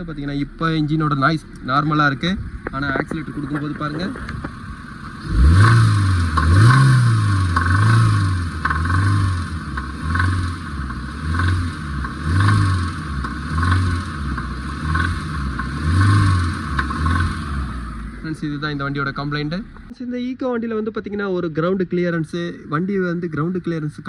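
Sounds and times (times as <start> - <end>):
engine revving in blips: 4.4 - 19.9
abnormal engine knocking noise: 7.5 - 17.4.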